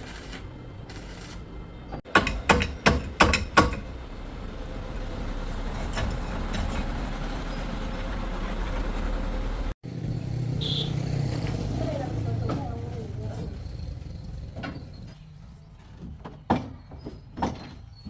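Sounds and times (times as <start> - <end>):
sharp knocks: 2.1 - 3.9.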